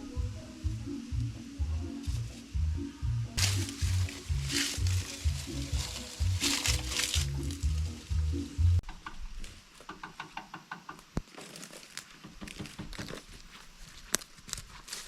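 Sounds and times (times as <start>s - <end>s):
background music: 0.0s - 8.8s.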